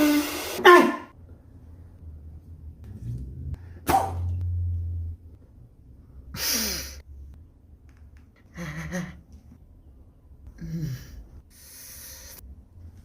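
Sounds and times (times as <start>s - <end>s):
person's breathy vocal sounds: 10.5s - 12.4s.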